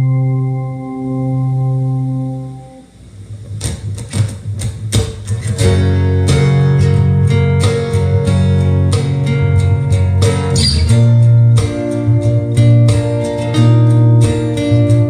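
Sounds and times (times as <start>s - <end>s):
held low chord: 0.0s - 3.0s
guitar picking and strumming: 0.0s - 15.0s.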